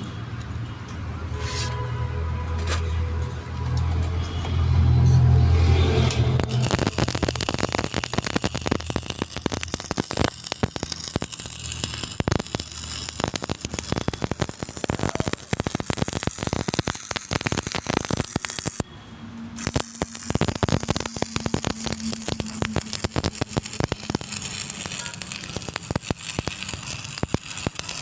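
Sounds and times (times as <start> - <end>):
arc welding crackling: 5.4 - 18.9, 19.5 - 28.0.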